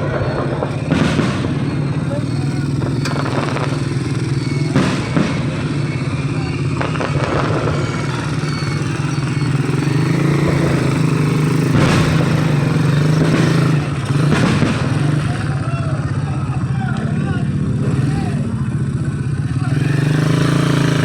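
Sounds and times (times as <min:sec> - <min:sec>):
low motor drone: 0:00.0 - 0:15.8
fireworks bangs: 0:00.0 - 0:21.0.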